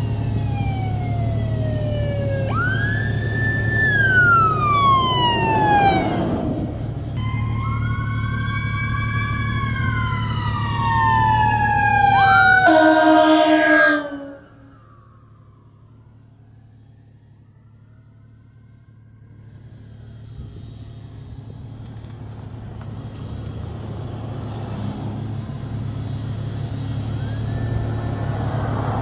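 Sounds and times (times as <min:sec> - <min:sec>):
faint siren wailing: 0:00.0 - 0:20.3, 0:26.8 - 0:29.0
fire truck diesel engine rumbling: 0:00.0 - 0:29.0.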